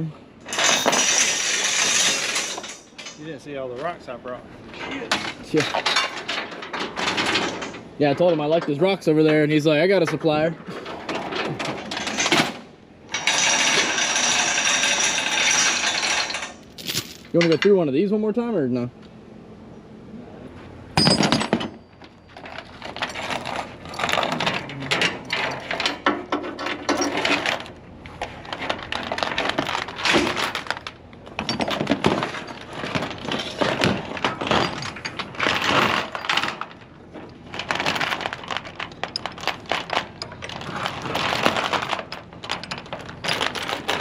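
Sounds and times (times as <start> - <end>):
hard objects clattering: 0.4 - 3.3, 21.0 - 44.0.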